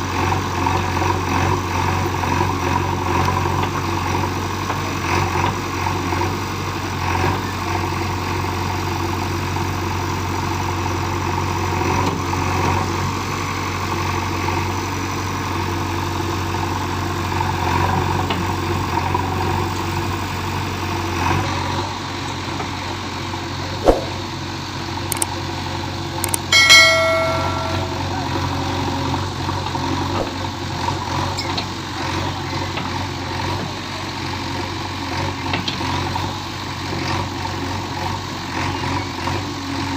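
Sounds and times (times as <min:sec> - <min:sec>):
short high-pitched tone: 0:26.2 - 0:28.6.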